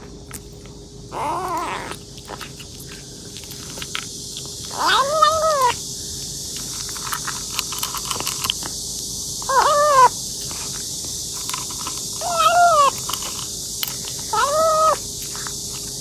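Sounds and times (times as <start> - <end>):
kitten meowing: 1.1 - 2.0, 4.7 - 5.8, 9.5 - 10.1, 12.2 - 13.0, 14.3 - 15.0.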